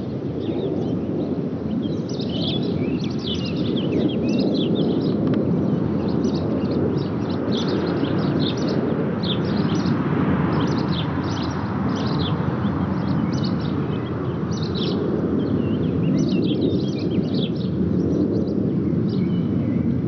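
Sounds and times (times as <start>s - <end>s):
distant jet roar: 0.0s - 20.0s
small birds chirping: 0.3s - 20.0s.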